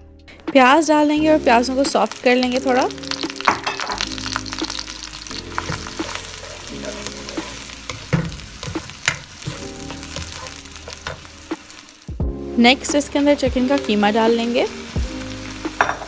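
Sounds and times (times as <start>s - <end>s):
onions sizzling in oil: 0.6s - 16.0s
spatula scraping and knocking pan: 3.2s - 11.8s, 15.6s - 16.0s.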